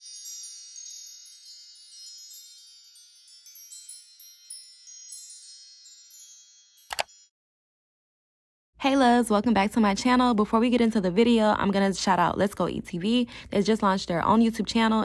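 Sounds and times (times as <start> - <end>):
high bell-like chimes ringing: 0.0 - 7.3.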